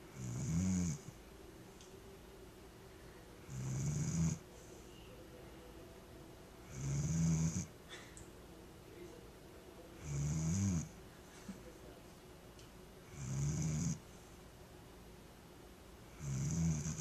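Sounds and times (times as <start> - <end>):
dog snoring: 0.1 - 1.2, 3.4 - 4.5, 6.6 - 7.7, 10.0 - 11.0, 13.0 - 14.1, 16.1 - 17.0.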